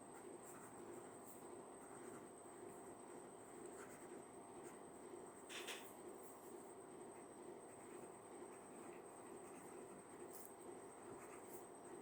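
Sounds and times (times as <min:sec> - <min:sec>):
pen scratching on paper: 0:00.2 - 0:04.8, 0:05.5 - 0:12.0.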